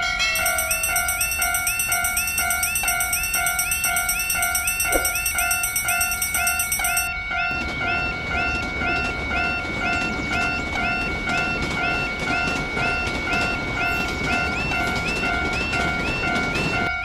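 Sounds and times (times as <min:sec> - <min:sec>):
high ringing tone: 0:00.0 - 0:17.0
railroad crossing bell ringing: 0:00.0 - 0:17.0.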